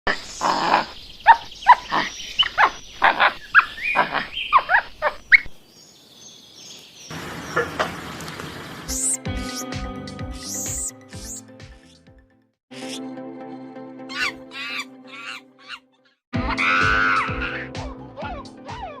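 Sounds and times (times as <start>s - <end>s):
gibbon whooping calls: 14.1s - 15.8s.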